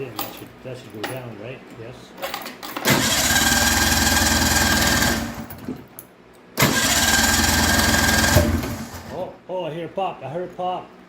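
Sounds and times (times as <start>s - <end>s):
snowmobile engine cranking: 2.8s - 5.7s, 6.6s - 9.2s
starter motor whine: 2.8s - 5.7s, 6.6s - 9.2s.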